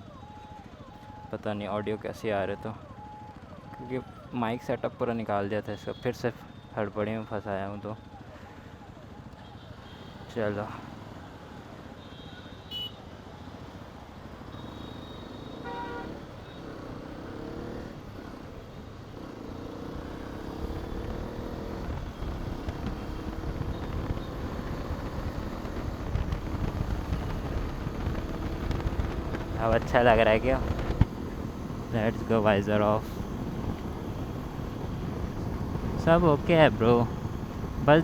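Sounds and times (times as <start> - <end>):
motorcycle engine accelerating: 14.5 - 38.0
short horn toot: 14.7 - 16.2
wind rumbling on microphone: 20.8 - 31.9, 33.1 - 38.0.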